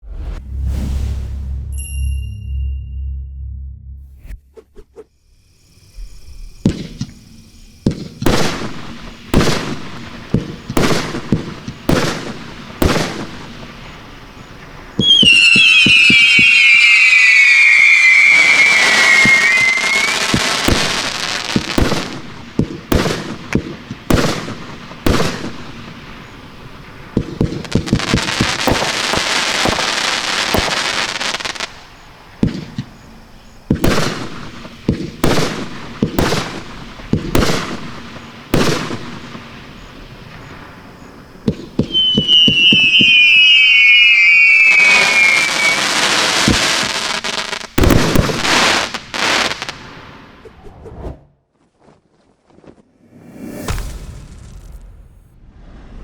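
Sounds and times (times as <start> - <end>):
firework whistles gliding down: 4.3 - 51.1
firework crackling: 6.3 - 50.4
firework shots and bursts: 6.6 - 50.4.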